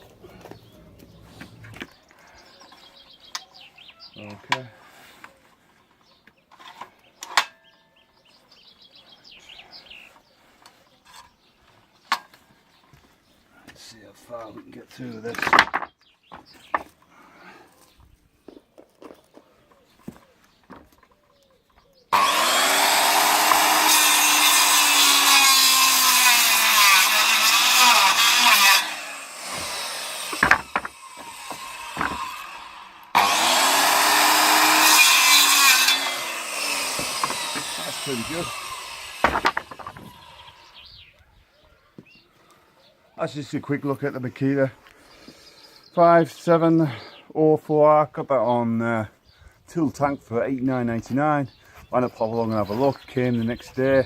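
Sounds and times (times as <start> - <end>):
birds chirping: 0.0 - 54.0
circular saw cutting wood: 22.1 - 40.8
sharp knocks: 30.3 - 32.4, 36.9 - 37.8, 39.2 - 40.2.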